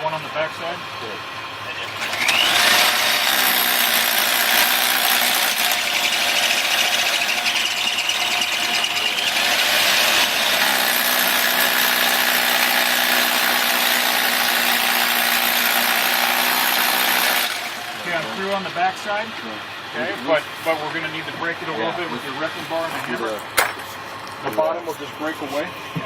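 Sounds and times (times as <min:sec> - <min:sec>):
power saw cutting block wall: 0:01.7 - 0:19.0.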